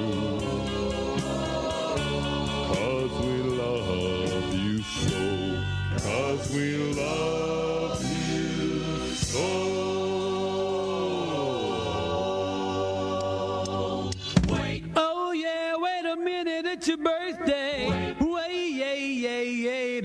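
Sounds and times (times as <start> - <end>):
band playing: 0.0 - 14.8
voices singing held chords: 0.0 - 15.4.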